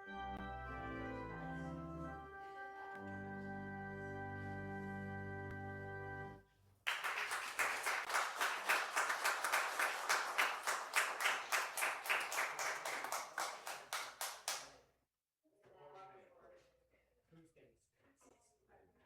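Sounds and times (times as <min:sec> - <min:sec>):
held music chord: 0:00.0 - 0:06.4
congregation applauding: 0:06.9 - 0:14.7.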